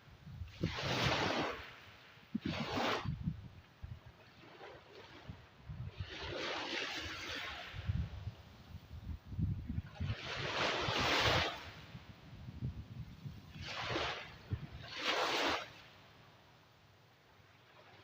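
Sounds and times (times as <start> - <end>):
ocean waves breaking: 0.0 - 3.2, 3.8 - 9.0, 9.6 - 12.2, 13.0 - 16.4.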